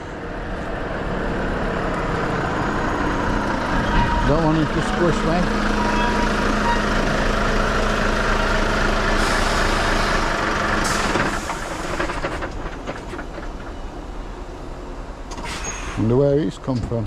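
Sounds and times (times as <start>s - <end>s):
diesel lorry engine running: 0.0s - 17.0s
air brake hisses: 9.2s - 10.0s, 10.8s - 12.1s, 15.4s - 16.0s.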